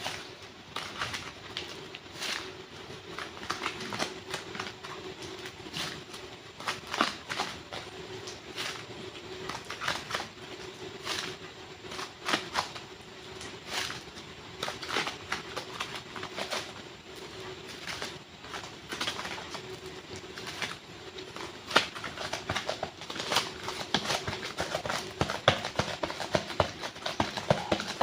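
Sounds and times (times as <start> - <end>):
faint steady hum: 0.0 - 28.0.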